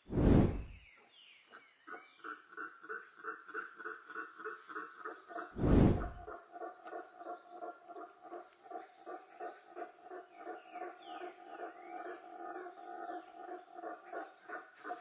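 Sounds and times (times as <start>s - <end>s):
repeating animal calls: 5.4s - 6.3s.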